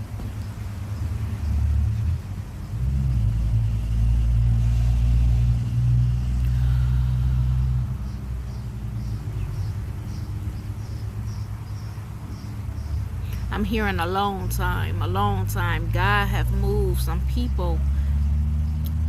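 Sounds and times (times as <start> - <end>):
vehicle engine rumble: 0.0 - 19.0
faint insect chirping: 6.2 - 13.7.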